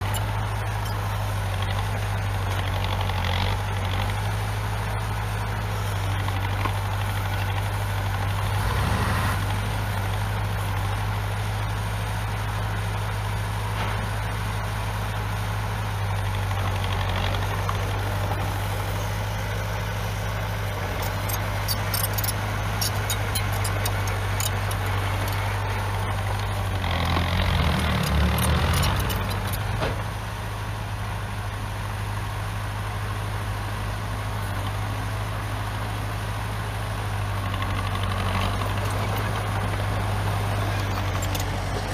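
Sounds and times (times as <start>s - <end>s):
diesel engine running: 0.0s - 41.9s
sharp clicks: 21.0s - 25.4s.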